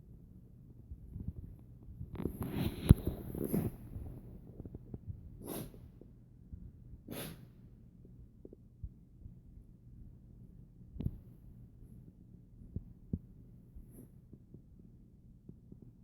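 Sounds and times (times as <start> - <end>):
dog breathing noisily: 5.4 - 5.9, 7.1 - 7.5.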